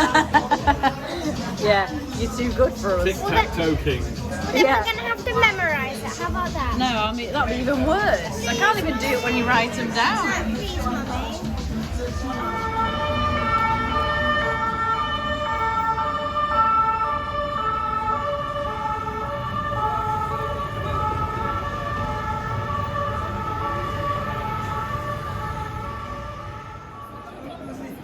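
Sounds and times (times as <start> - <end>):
low traffic rumble: 0.0 - 28.0
two-tone emergency siren: 12.0 - 28.0.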